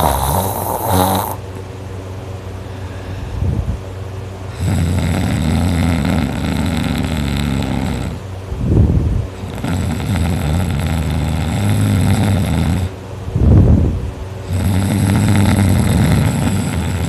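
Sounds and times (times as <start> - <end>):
person snoring loudly: 0.0 - 1.4, 4.5 - 8.2, 9.4 - 13.0, 14.4 - 17.0.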